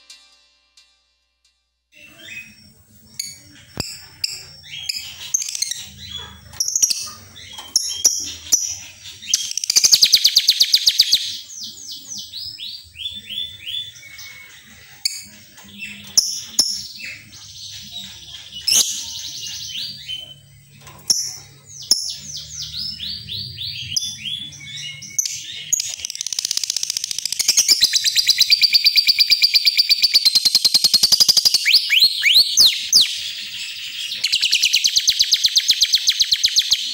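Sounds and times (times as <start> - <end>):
lovebird chirping and whistling: 2.0 - 11.4, 21.2 - 33.4, 34.1 - 36.9.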